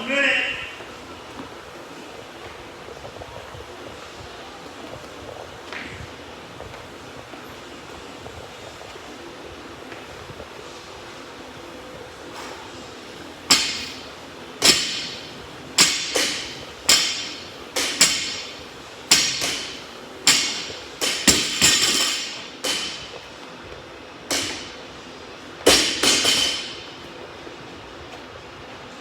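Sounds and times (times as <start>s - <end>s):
barbell clanking on floor: 13.5s - 23.2s, 24.3s - 24.8s, 25.6s - 26.9s.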